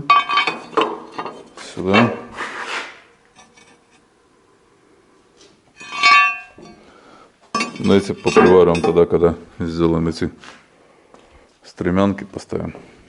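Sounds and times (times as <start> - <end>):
metal scraping: 0.0 - 4.1, 5.8 - 6.9, 7.6 - 9.1
ringing metallic clank: 5.8 - 6.8.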